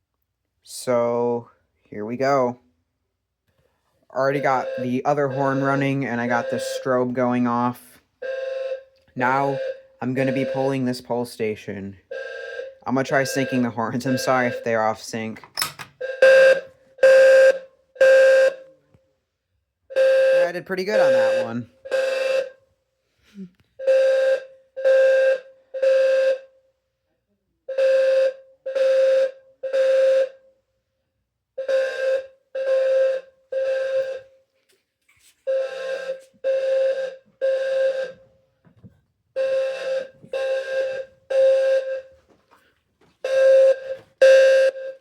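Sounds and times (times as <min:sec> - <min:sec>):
fire alarm sounders buzzing: 0:04.1 - 0:18.8, 0:19.9 - 0:22.6, 0:23.8 - 0:26.5, 0:27.7 - 0:30.4, 0:31.6 - 0:34.4, 0:35.5 - 0:38.6, 0:39.4 - 0:42.5, 0:43.2 - 0:45.0.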